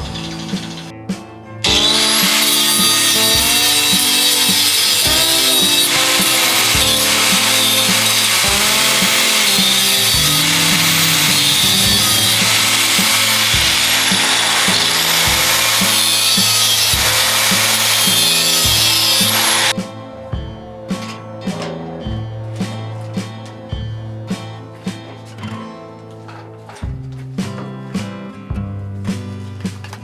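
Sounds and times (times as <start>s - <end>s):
power tool grinding metal: 0.0s - 0.9s, 1.6s - 19.7s
background music: 0.0s - 30.0s.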